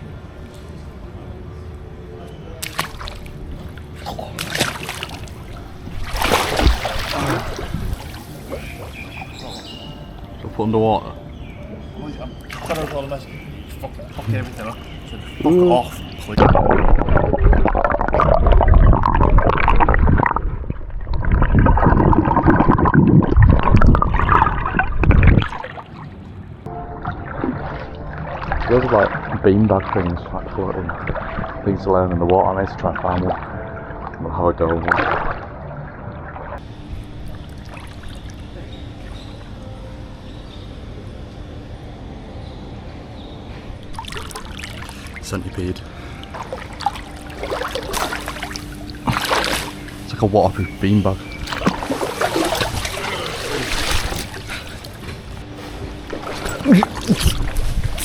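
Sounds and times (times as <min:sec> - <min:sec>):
water splashes: 0:02.5 - 0:10.6, 0:12.4 - 0:35.6, 0:36.2 - 0:39.2, 0:43.8 - 0:58.0
muffled underwater bubbling: 0:03.0 - 0:10.6, 0:13.4 - 0:25.7, 0:43.9 - 0:58.0.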